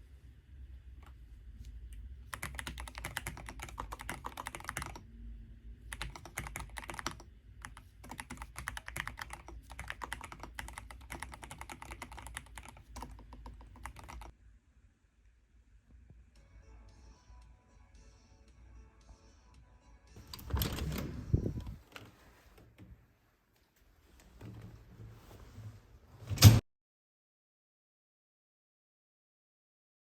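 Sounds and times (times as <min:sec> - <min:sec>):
computer keyboard typing: 0:02.0 - 0:05.0, 0:05.9 - 0:14.3.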